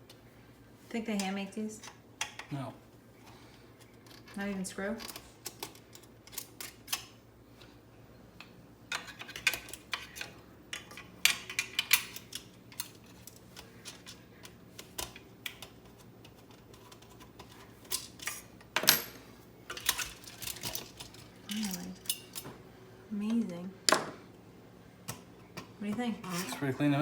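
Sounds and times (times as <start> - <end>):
plastic parts clicking and clattering: 19.7 - 22.4.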